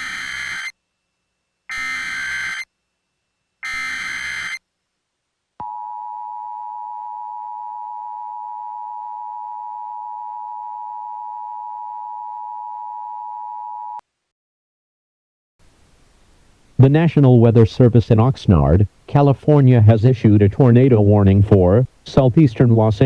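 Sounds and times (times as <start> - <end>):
screech of digital data: 0.0 - 0.7, 1.7 - 2.7, 3.6 - 4.6
two-tone attention signal: 0.0 - 0.7, 1.7 - 2.7, 3.6 - 4.6.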